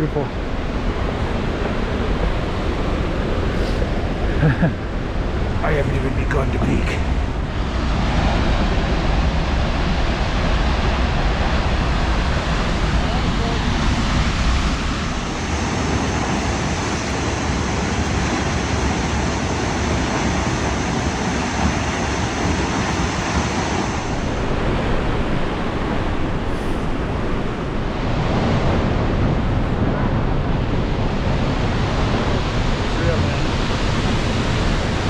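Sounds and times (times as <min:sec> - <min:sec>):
waterfall roaring: 0:00.0 - 0:27.6.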